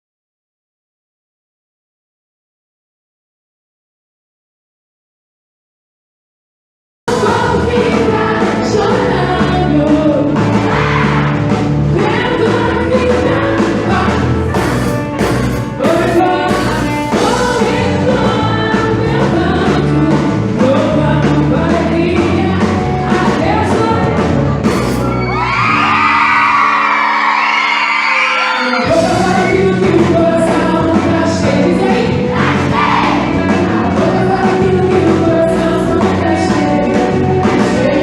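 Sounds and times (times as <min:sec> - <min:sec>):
song with singing bass and drums: 0:07.1 - 0:27.4, 0:28.0 - 0:38.0.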